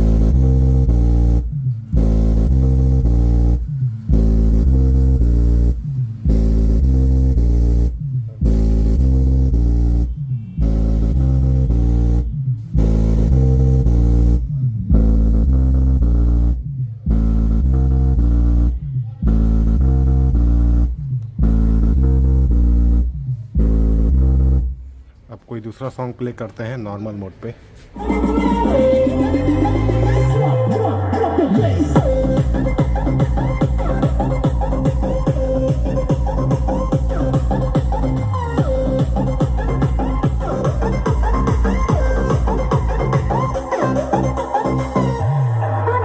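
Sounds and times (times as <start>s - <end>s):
song with deep bass through speaker: 0.0s - 25.3s, 27.6s - 46.0s.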